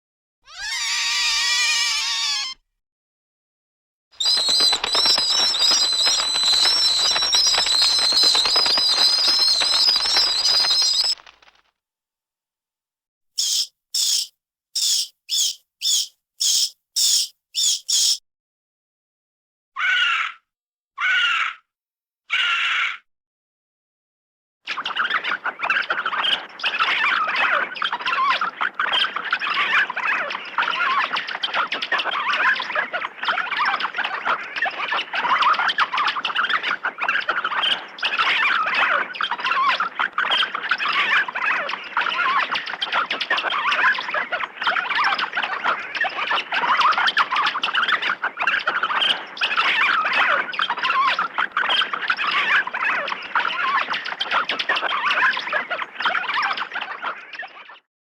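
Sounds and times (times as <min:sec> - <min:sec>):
bats squeaking and chittering: 0:04.2 - 0:11.5, 0:13.4 - 0:18.2, 0:24.9 - 0:57.2.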